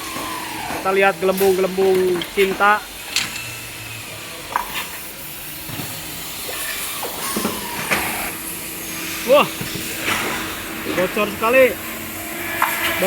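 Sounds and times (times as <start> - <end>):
compressed air hissing: 3.8 - 13.0.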